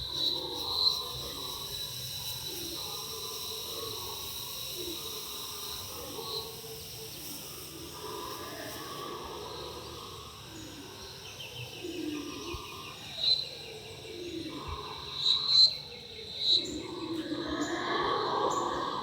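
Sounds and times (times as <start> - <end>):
howler monkeys howling: 0.0 - 19.0
pulsing insect trill: 0.0 - 19.0
bird chirping: 8.7 - 17.7.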